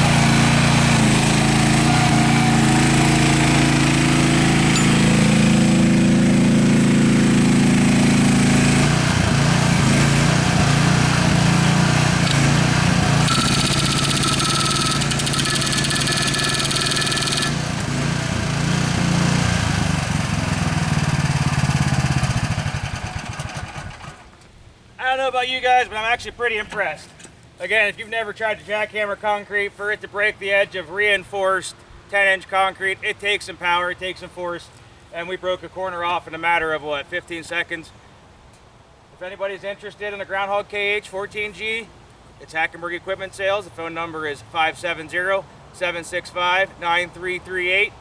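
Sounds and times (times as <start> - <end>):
breaker hammering concrete: 0.0 - 19.3
small gasoline engine running: 0.0 - 24.3.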